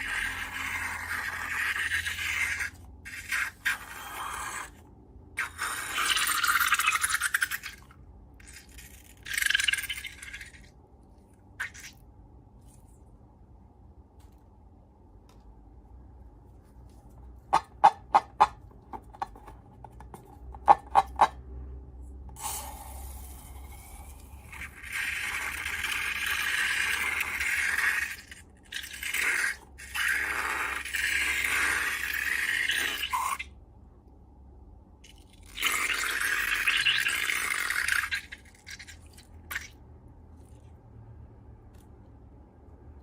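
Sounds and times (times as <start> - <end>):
scraping hissing slime noise: 22.3 - 28.3.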